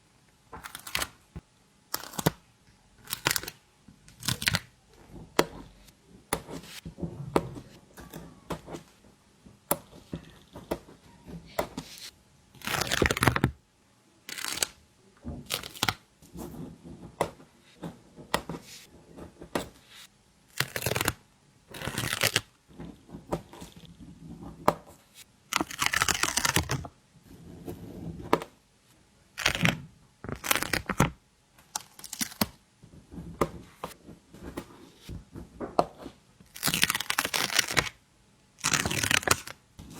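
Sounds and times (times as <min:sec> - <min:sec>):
stickers peeling crackle: 0:12.6 - 0:13.6, 0:14.3 - 0:14.8, 0:25.6 - 0:26.8, 0:29.4 - 0:31.1, 0:36.5 - 0:38.0, 0:38.6 - 0:39.5.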